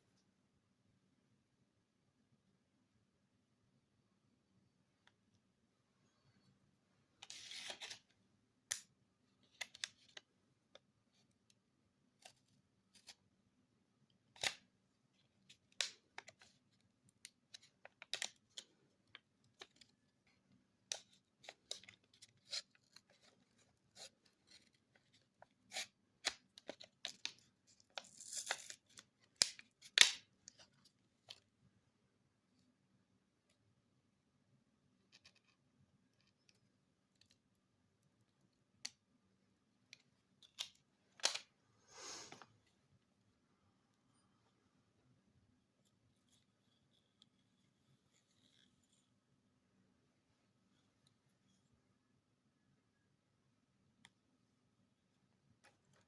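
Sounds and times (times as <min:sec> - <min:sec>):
small objects scraping: 0:07.2 - 0:08.0
tearing or scraping sound: 0:07.2 - 0:08.0.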